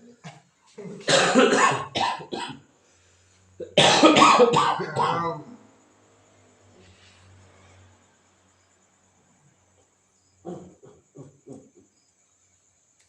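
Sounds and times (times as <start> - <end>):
person coughing hard: 1.0 - 2.6, 3.6 - 5.4, 10.5 - 11.6.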